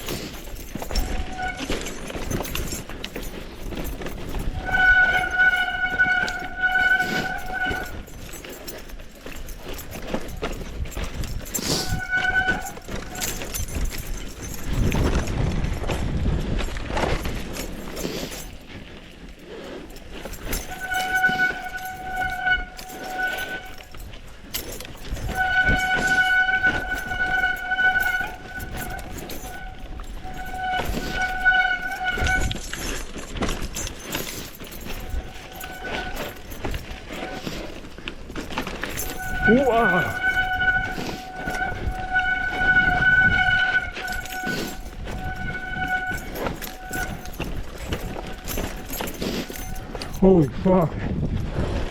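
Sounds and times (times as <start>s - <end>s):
wind: 0.0s - 51.9s
bike disc brakes squealing: 4.0s - 8.7s, 10.9s - 14.9s, 20.2s - 33.0s, 33.8s - 37.8s, 38.4s - 50.2s
tyres rumbling: 16.7s - 50.9s.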